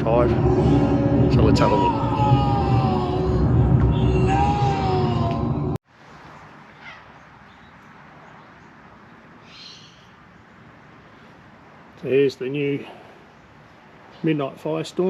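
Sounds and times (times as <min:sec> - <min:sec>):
loud music: 0:00.0 - 0:05.8
faint bird chirps: 0:09.4 - 0:10.2.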